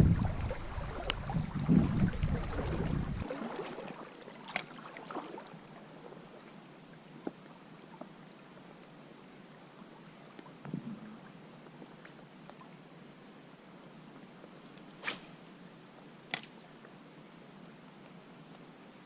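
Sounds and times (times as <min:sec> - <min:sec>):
water sloshing and splashing: 0:00.0 - 0:06.4
small creek rushing: 0:00.0 - 0:07.2.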